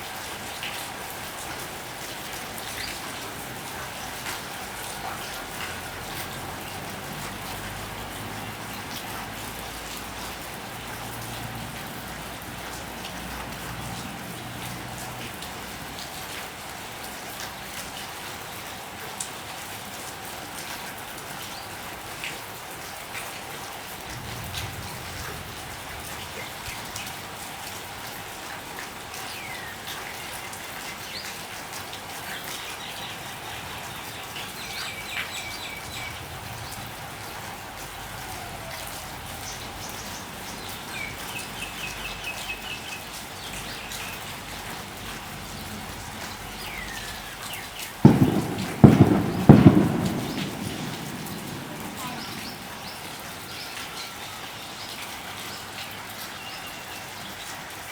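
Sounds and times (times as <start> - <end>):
steady rain falling: 0.0 - 57.9
loud thunder crack: 48.0 - 53.5.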